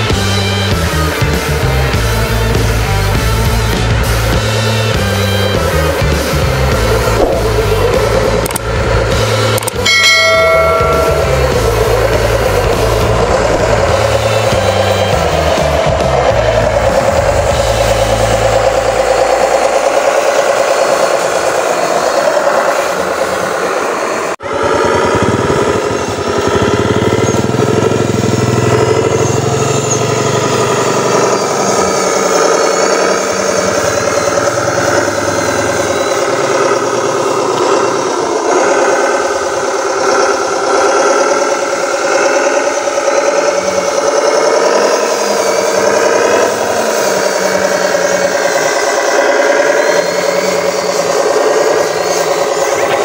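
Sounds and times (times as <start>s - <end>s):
model truck motor whining: 0.0s - 53.0s.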